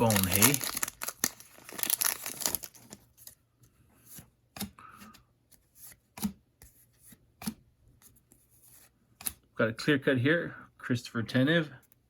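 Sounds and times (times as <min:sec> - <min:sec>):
crinkly foil wrapper rustle: 0:00.0 - 0:03.4
cards sliding and tapping: 0:04.0 - 0:09.4.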